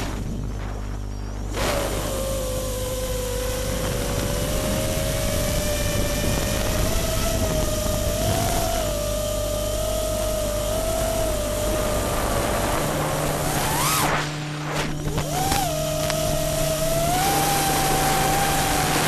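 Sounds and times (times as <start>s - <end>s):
drone motors and propellers whirring: 0.0s - 19.0s.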